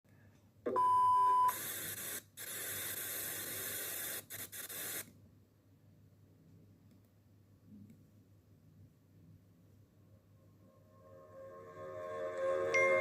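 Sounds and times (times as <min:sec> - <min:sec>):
static hiss: 0:01.5 - 0:05.2.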